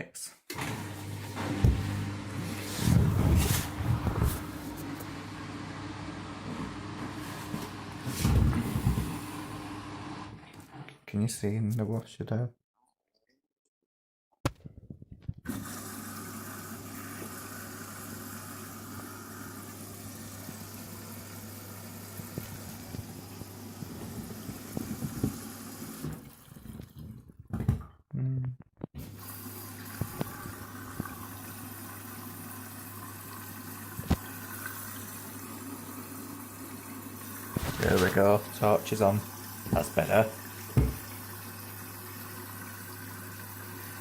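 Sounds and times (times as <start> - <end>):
water rushing into washing machine: 0.5 - 10.9, 15.5 - 27.1, 29.0 - 44.0
knocks: 40.8 - 41.1.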